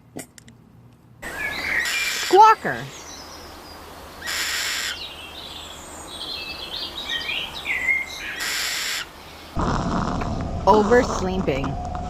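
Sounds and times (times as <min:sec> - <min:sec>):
animal snoring: 0:09.6 - 0:10.4.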